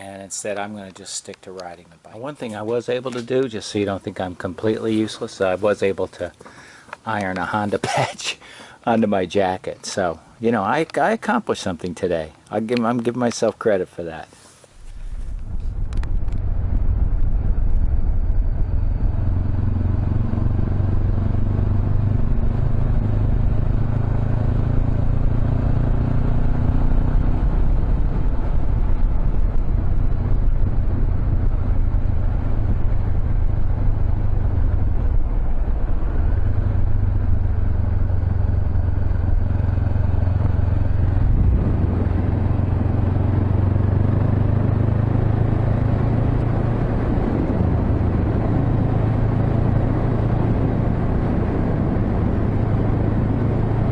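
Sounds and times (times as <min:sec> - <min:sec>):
motorcycle engine running: 0:14.9 - 0:53.9.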